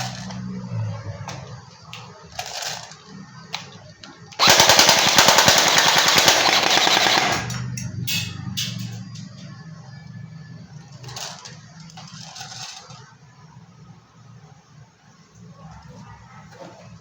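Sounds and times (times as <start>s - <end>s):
toy blaster full-auto rattle: 4.4s - 7.6s, 11.0s - 13.1s.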